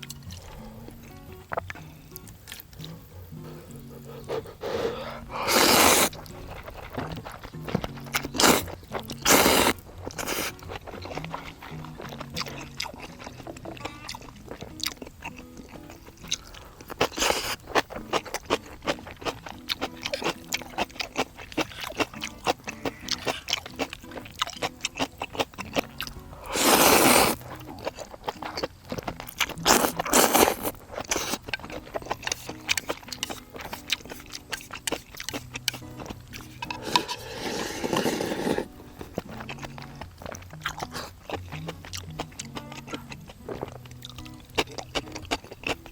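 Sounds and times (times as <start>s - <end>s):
chewing crunches: 0.0s - 3.0s, 3.7s - 45.9s
light background music: 0.0s - 45.9s
noodle slurps: 4.1s - 6.8s, 8.4s - 10.6s, 26.5s - 27.4s, 36.7s - 38.8s.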